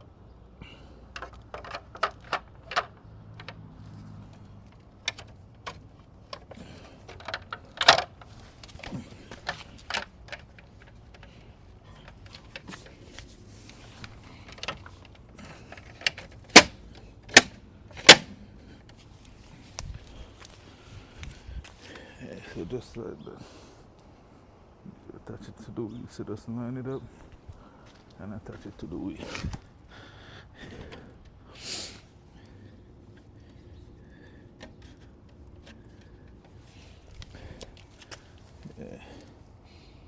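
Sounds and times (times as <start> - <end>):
plastic clicking against wheel rim: 4.3 - 19.0.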